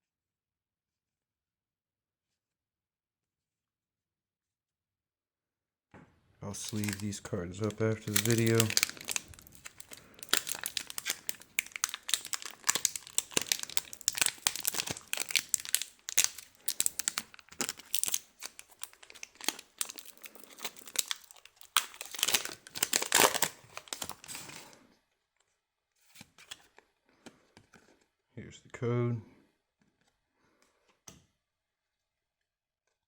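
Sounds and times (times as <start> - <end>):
foil wrapper crinkling and tearing: 6.5 - 24.8.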